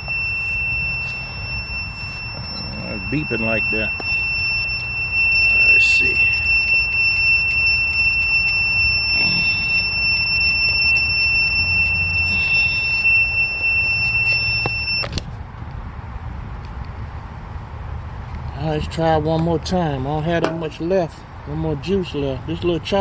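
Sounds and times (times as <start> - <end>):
high-pitched beep: 0.0 - 15.1.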